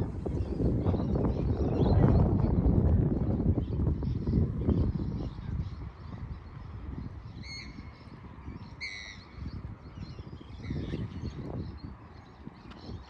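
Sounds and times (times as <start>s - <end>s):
wind rumble on microphone: 0.0s - 13.0s
high bird calls: 3.5s - 13.0s.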